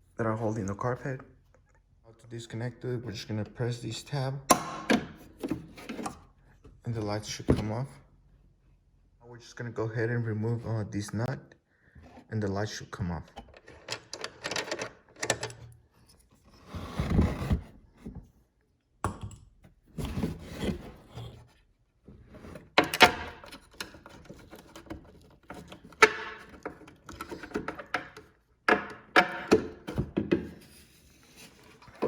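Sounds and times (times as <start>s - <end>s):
plastic housing moved about: 13.2s - 15.7s.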